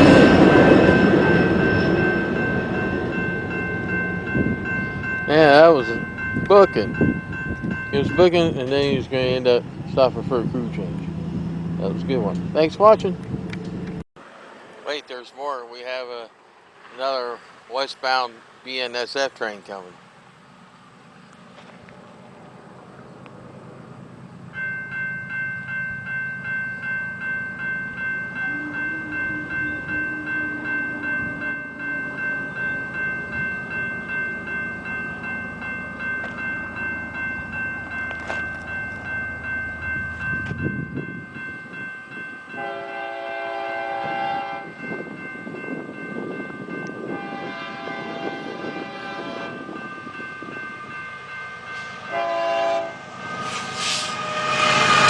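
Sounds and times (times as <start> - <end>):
railroad crossing bell ringing: 0.0 - 14.0, 21.6 - 55.0
train rumble: 0.0 - 14.0, 19.7 - 55.0
locomotive horn blasts: 7.9 - 13.9, 28.3 - 33.4, 42.5 - 44.9, 46.8 - 53.5.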